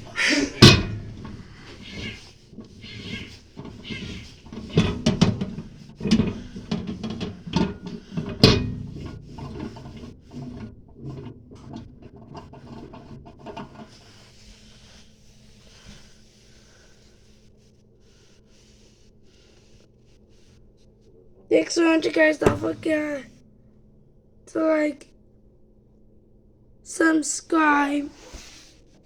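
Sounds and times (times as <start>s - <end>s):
objects knocking and clattering: 0.0s - 14.0s, 22.4s - 23.2s.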